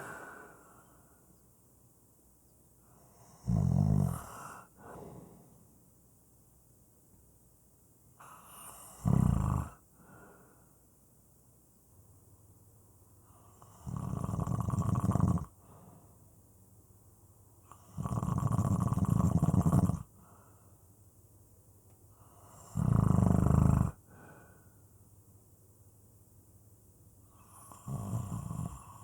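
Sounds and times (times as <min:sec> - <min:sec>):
quiet breathing: 0:00.0 - 0:01.6, 0:02.7 - 0:06.0, 0:08.1 - 0:11.6, 0:12.4 - 0:16.5, 0:17.4 - 0:21.2, 0:22.0 - 0:25.4, 0:27.2 - 0:29.0
person snoring: 0:03.2 - 0:05.4, 0:08.6 - 0:09.8, 0:13.6 - 0:15.5, 0:17.8 - 0:20.1, 0:22.4 - 0:24.0, 0:27.4 - 0:29.0.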